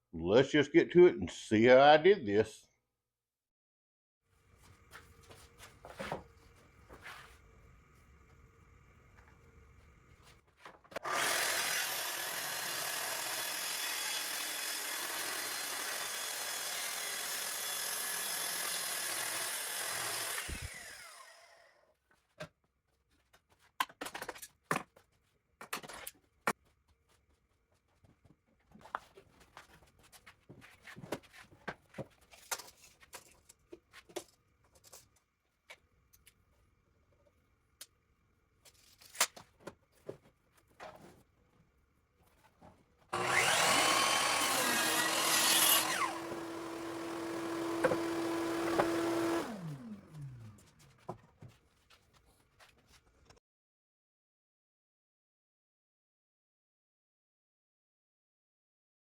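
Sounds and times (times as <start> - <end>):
power tool running: 11.0 - 21.6, 43.1 - 50.6.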